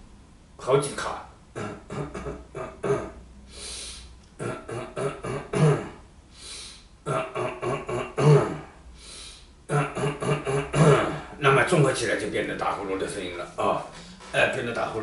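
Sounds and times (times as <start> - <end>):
man imitating snoring: 6.6 - 8.7.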